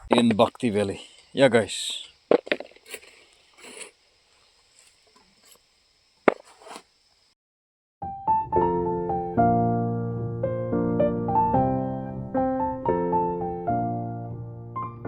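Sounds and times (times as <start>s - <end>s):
gentle piano music: 8.0s - 15.0s.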